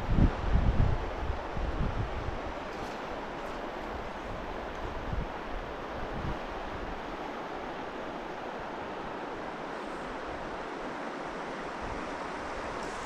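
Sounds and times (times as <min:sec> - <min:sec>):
wind rumble on microphone: 0:00.0 - 0:07.2
stream rushing: 0:00.0 - 0:13.0.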